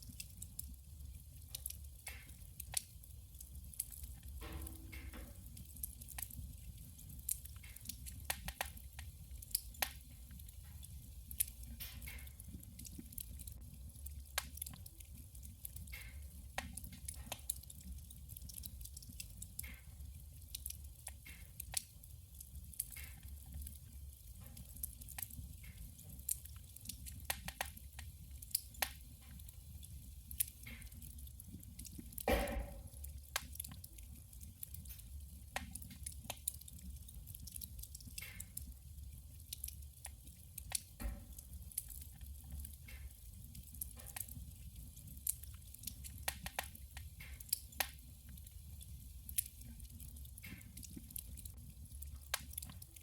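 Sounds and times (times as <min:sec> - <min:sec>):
low rumble of fire: 0:00.0 - 0:53.0
wood fire crackling and popping: 0:00.0 - 0:53.0.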